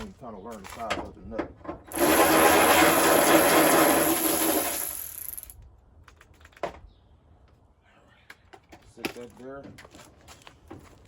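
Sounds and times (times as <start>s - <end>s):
ratchet wrench ratcheting: 1.9s - 5.5s.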